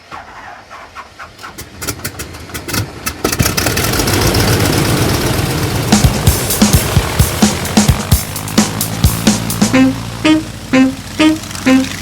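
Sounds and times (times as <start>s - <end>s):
engine starting up: 0.0s - 5.6s.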